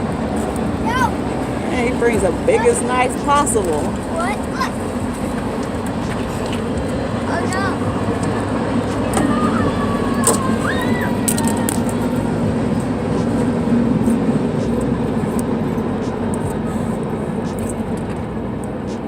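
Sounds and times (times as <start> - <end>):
train rumbling past: 0.0 - 19.0
high squeal: 8.9 - 12.1.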